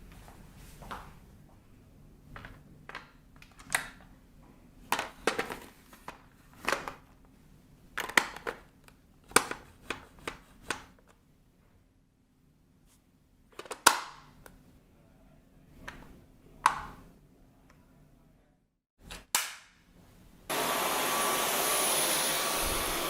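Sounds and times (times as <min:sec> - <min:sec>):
plastic parts clicking and knocking: 0:04.9 - 0:07.2, 0:07.9 - 0:11.0, 0:13.5 - 0:14.3.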